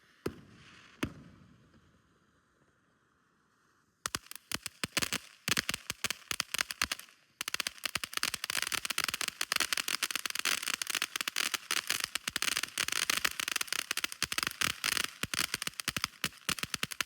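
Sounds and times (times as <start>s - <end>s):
fireworks crackling: 4.1s - 17.0s.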